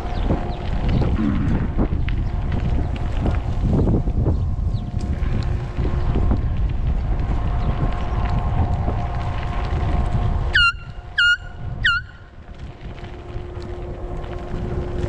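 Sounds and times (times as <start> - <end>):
wind on microphone: 0.0 - 15.0
bicycle horn toots: 10.5 - 12.2.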